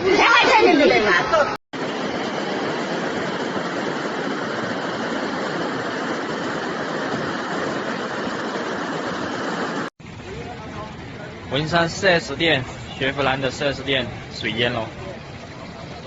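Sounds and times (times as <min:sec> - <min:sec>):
rushing floodwater: 0:00.0 - 0:16.0.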